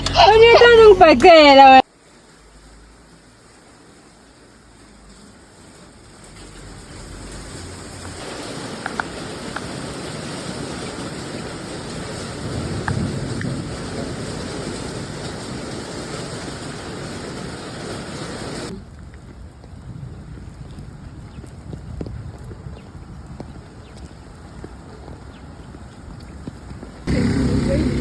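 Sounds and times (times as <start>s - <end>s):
heavy rain pouring: 0.0s - 19.0s, 27.0s - 28.0s.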